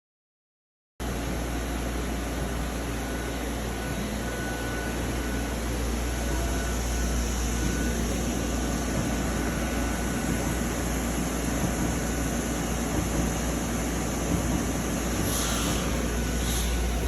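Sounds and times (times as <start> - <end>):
machining center humming: 1.0 - 17.0
short hiss: 15.2 - 17.0.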